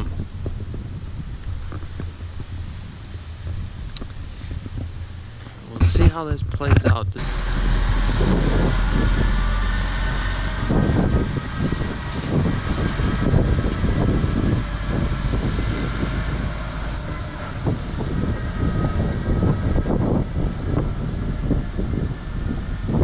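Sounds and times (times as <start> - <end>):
gusty wind buffeting microphone: 0.0 - 23.0.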